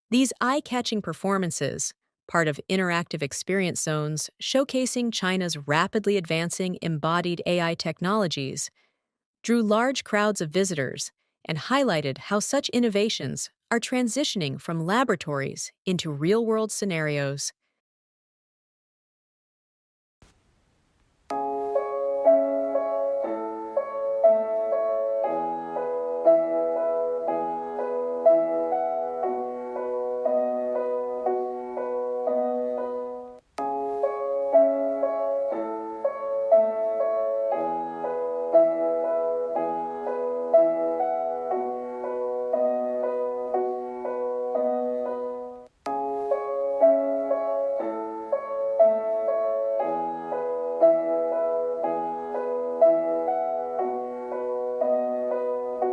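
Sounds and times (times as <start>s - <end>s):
piano music: 21.3s - 55.9s.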